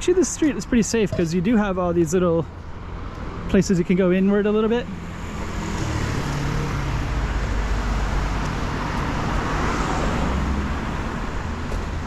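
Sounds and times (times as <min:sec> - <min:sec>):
car passing by: 0:05.0 - 0:12.0.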